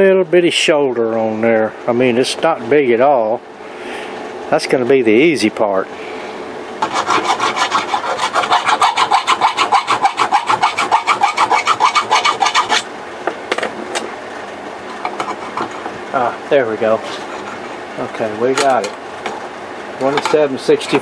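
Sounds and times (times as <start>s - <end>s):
file rasping in plastic: 6.8s - 12.9s, 15.1s - 15.9s, 17.0s - 17.8s.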